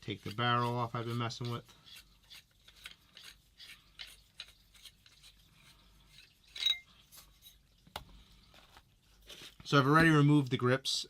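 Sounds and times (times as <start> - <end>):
small rubs and clicks: 0.1 - 7.8
metallic clink: 6.6 - 6.9.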